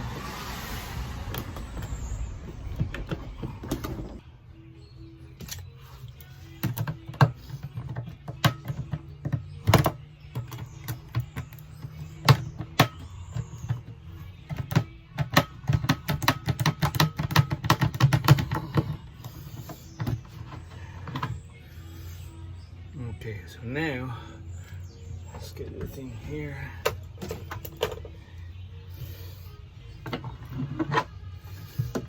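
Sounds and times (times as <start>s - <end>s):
background music: 0.0s - 32.0s
plastic jug clicking and snapping: 14.5s - 19.0s.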